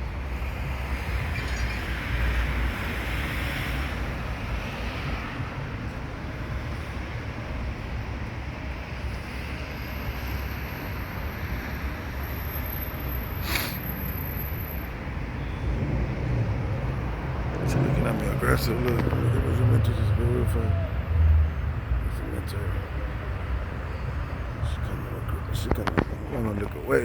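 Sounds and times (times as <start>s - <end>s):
street traffic noise: 0.0s - 27.0s
wind rumble on microphone: 15.4s - 22.2s, 23.6s - 27.0s.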